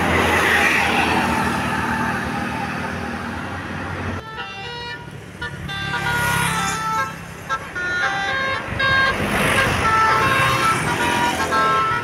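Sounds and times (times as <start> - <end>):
bus passing: 0.0 - 12.0.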